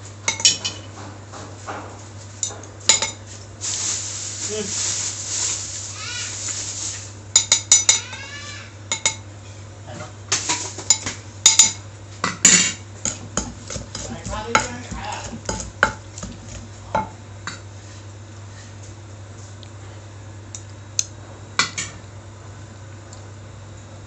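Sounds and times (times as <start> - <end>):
utensils clinking against a dish: 0.3 - 0.9, 2.4 - 3.3, 7.3 - 8.3, 8.9 - 9.2, 10.4 - 17.6.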